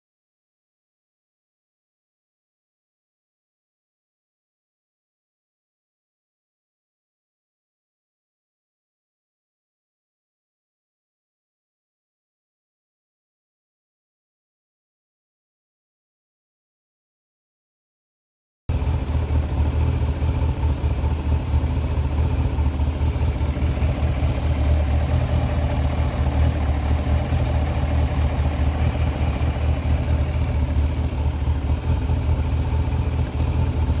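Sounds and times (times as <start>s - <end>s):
motorcycle engine idling: 18.7s - 34.0s.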